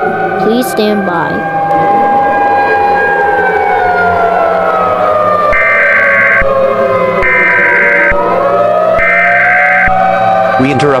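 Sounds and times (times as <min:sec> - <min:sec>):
gliding siren-like tones: 0:00.0 - 0:11.0
steady low drone: 0:00.0 - 0:11.0
harsh buzzing beep: 0:05.6 - 0:06.5, 0:07.2 - 0:08.2, 0:09.0 - 0:10.0.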